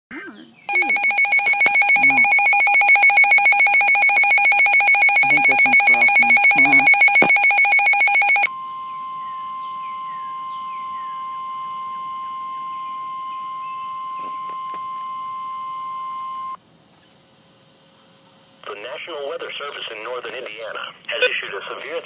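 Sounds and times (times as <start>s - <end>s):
buzzing two-tone alert alarm: 0.7s - 16.6s
steady warning alarm tone: 0.7s - 16.6s.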